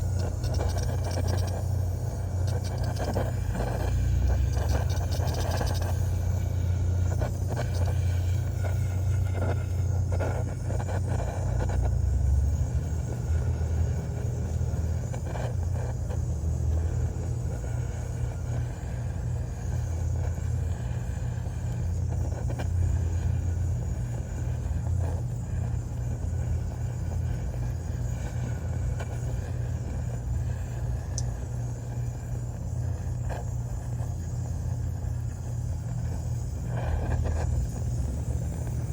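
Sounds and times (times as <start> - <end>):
torch flame rumbling: 0.0 - 38.9.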